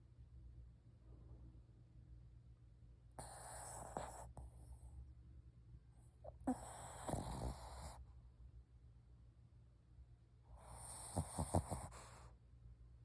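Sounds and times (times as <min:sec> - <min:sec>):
dog snoring: 0:03.2 - 0:04.7, 0:06.3 - 0:08.0, 0:10.5 - 0:12.3.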